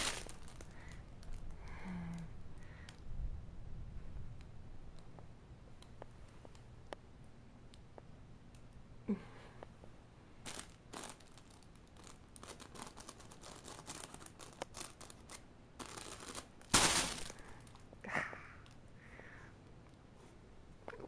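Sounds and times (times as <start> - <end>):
crinkling and rustling: 0.0 - 3.0, 10.4 - 18.9.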